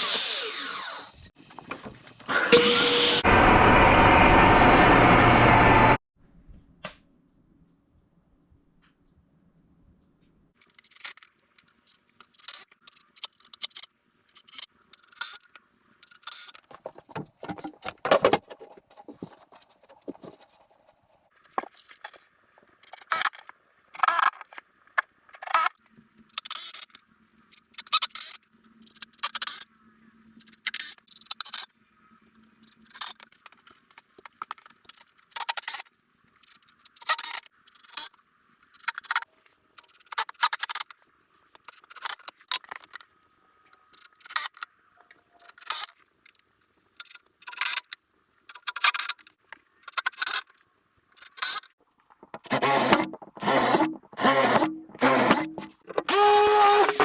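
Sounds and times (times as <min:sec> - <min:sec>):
scraping strokes on wood: 0:52.2 - 0:57.0.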